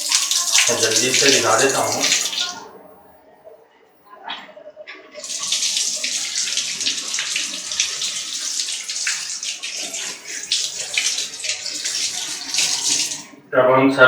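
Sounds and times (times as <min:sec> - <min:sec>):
water splashing on mesh filter: 0:00.0 - 0:02.6, 0:05.2 - 0:13.3.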